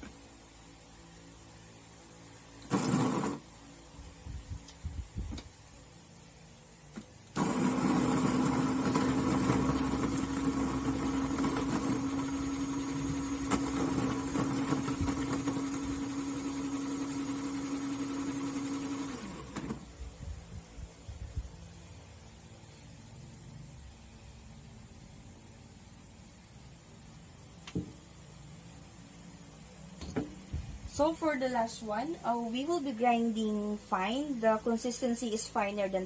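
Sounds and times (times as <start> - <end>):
coffee grinder motor: 2.6 - 3.4, 7.4 - 19.9.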